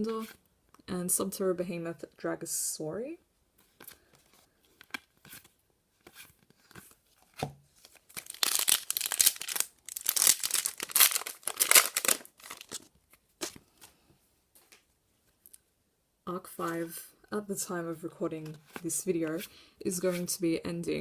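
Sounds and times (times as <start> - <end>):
foil wrapper tearing and crinkling: 7.9 - 13.6.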